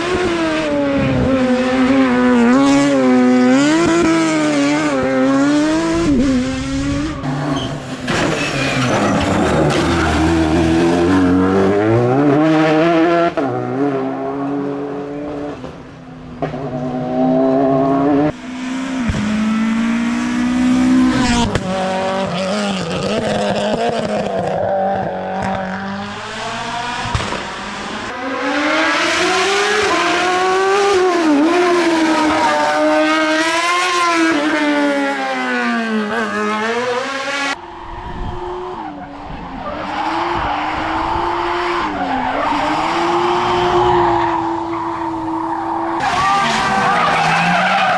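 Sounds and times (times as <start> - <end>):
race car engines revving: 0.0 - 47.9.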